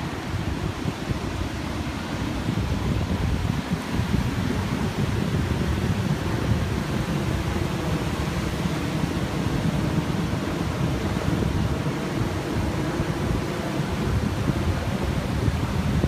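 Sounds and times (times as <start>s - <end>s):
ocean surf: 0.0s - 16.0s
wind buffeting microphone: 0.0s - 16.0s.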